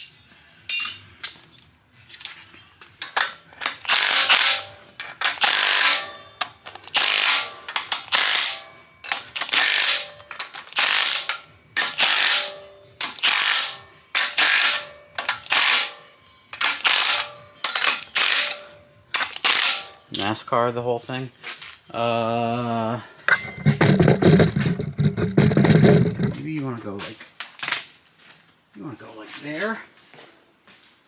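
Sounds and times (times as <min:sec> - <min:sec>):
ratchet wrench clicking: 0:03.0 - 0:16.0, 0:16.6 - 0:20.0.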